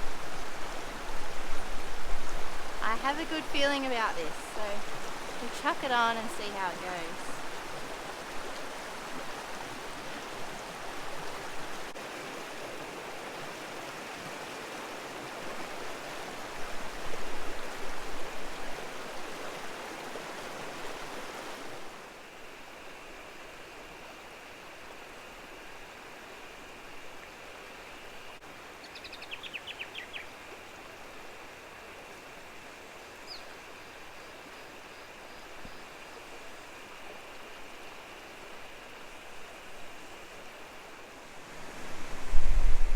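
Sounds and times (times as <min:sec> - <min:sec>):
stream flowing over rocks: 0:00.0 - 0:28.8, 0:30.3 - 0:42.9
bird chirping: 0:28.8 - 0:30.3.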